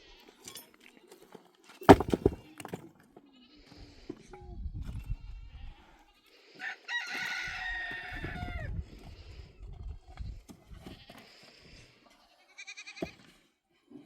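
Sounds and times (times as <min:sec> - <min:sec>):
rooster crowing: 0:06.6 - 0:08.6.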